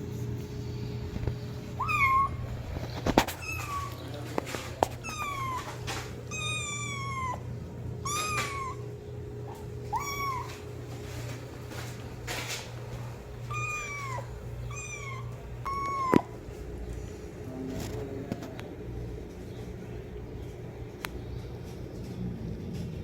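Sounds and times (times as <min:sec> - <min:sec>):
low steady hum: 0:00.0 - 0:23.0
kitten meowing: 0:01.8 - 0:02.6, 0:03.2 - 0:04.1, 0:04.8 - 0:08.9, 0:09.9 - 0:10.6, 0:13.5 - 0:16.4.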